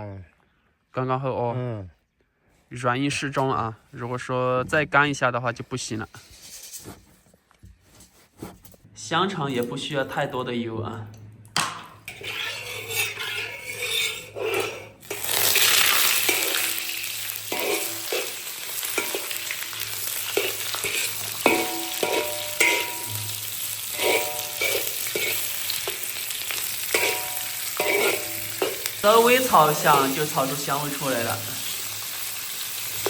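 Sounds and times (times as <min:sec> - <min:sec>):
spatula scraping metal pan: 0:06.1 - 0:07.2, 0:12.0 - 0:30.6
sausage sizzling in hot oil: 0:12.1 - 0:33.0.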